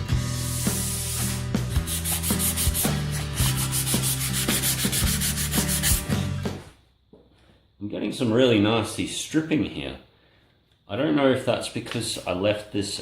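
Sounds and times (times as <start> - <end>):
sandpaper rasping on metal: 0.4 - 6.1.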